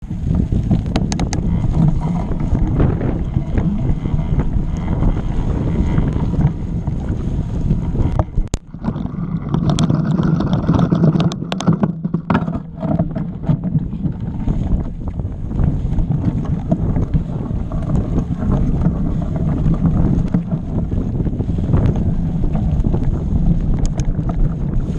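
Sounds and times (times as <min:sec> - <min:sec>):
wind buffeting microphone: 0:00.0 - 0:24.9
bike rattling over rocks: 0:00.3 - 0:24.9.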